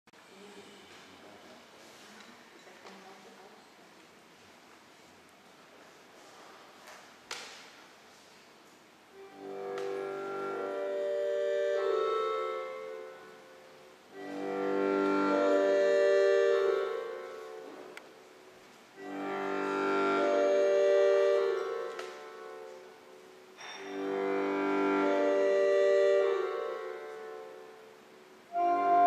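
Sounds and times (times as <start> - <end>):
slow instrumental music: 9.1 - 29.0.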